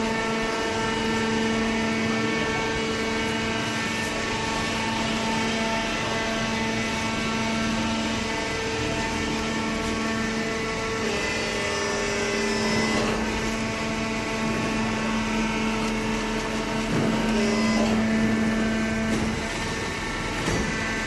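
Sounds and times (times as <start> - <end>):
hydraulic baler humming: 0.0 - 21.0.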